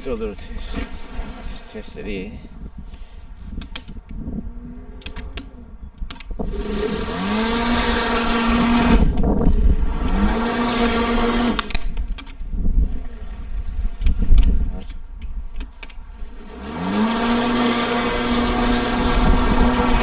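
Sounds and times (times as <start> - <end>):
electric lawn mower motor whine: 3.4 - 20.0
clicks: 3.5 - 4.2, 5.0 - 10.2, 11.2 - 12.5, 14.0 - 16.2.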